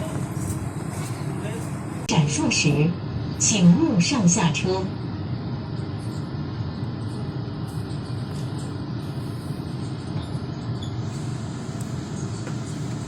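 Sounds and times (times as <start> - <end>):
metro train rumble: 0.0 - 13.0.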